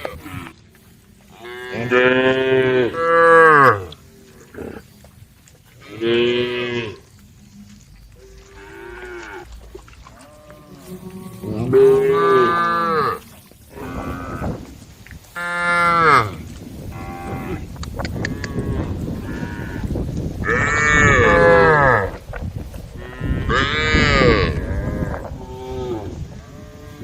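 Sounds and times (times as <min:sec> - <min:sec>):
cows mooing: 0:01.3 - 0:04.9, 0:05.8 - 0:22.2, 0:22.9 - 0:27.0.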